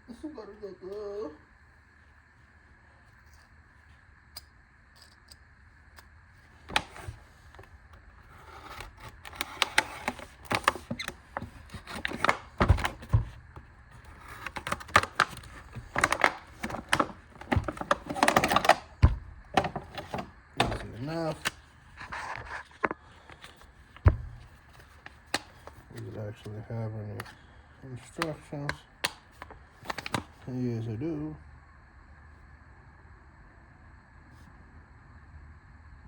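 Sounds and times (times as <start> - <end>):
packaging clicks and crinkles: 6.6 - 30.5.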